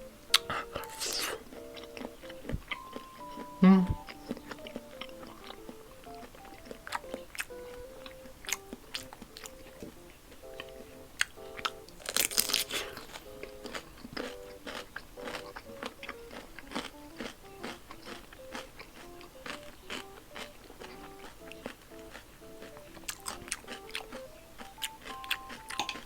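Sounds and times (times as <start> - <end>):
soft background music: 0.0 - 26.0
wet chewing: 0.0 - 26.0
crisp crunching bites: 12.0 - 26.0.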